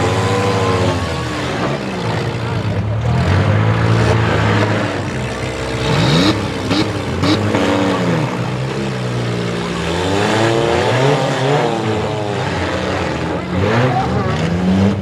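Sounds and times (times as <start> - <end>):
car engines revving hard: 0.0 - 15.0.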